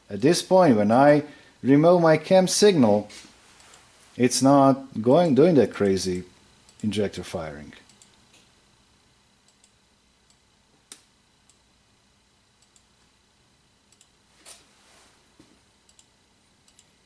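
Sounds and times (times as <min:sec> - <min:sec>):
faint clicks: 0:13.9 - 0:14.2, 0:15.9 - 0:16.9.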